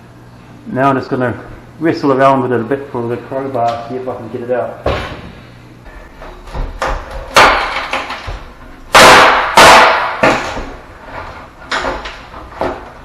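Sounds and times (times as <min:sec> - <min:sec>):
crowbar prying wood knocks: 0:06.5 - 0:10.8.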